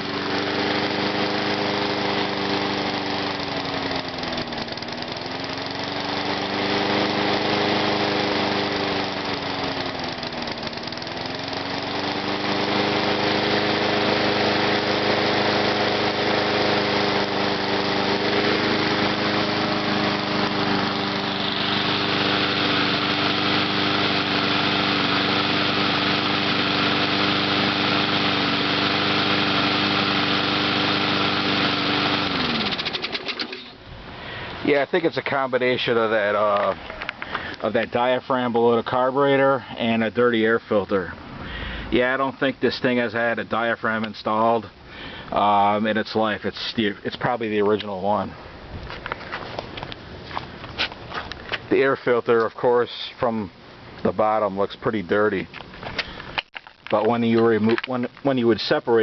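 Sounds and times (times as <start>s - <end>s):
lawn mower engine running: 0.0s - 39.8s.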